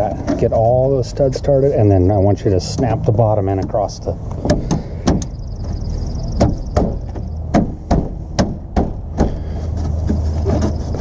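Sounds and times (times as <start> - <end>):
hand smacking car grille: 6.4 - 9.4.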